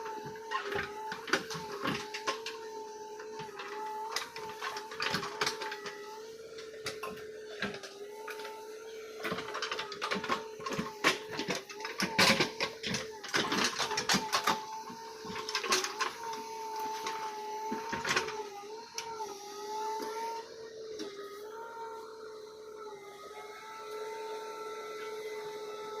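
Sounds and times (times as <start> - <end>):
mechanical whine: 0.0 - 26.0
clicks and clatter: 9.2 - 18.4.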